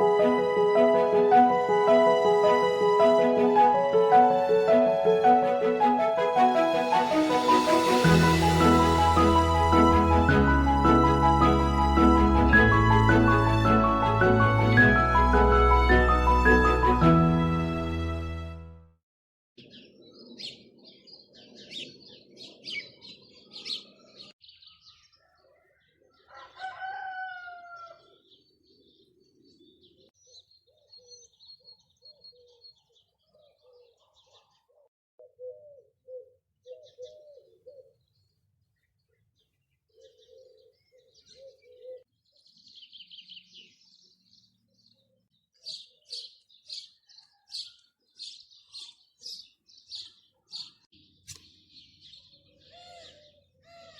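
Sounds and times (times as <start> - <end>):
small birds chirping: 19.6 - 26.5, 27.8 - 53.9
rooster crowing: 26.2 - 28.1, 47.0 - 47.9.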